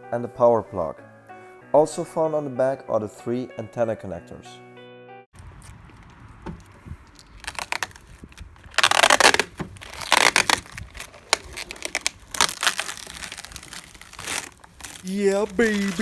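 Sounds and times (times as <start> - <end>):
plastic film peeling and crinkling: 5.4 - 16.0.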